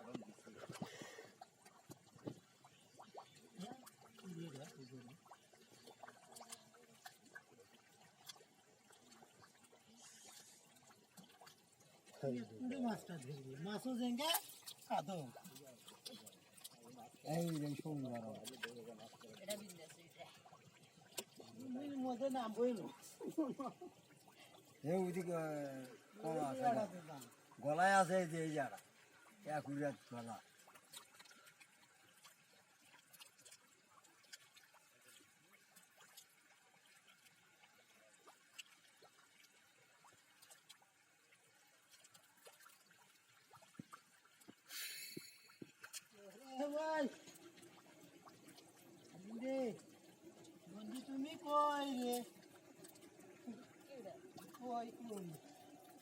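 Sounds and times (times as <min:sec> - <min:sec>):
small splashes of pond water: 0:00.0 - 0:56.0
faint hiss: 0:44.6 - 0:45.6.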